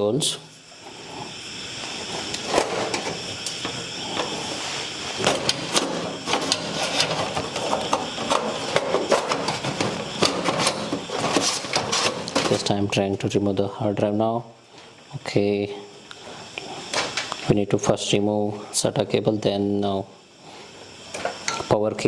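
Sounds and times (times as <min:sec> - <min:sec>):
steady mechanical hum: 0:00.0 - 0:22.0.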